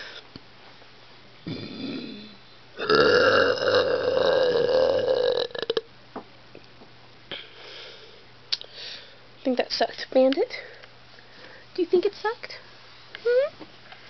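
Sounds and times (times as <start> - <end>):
drawn-out burp: 1.4 - 5.9.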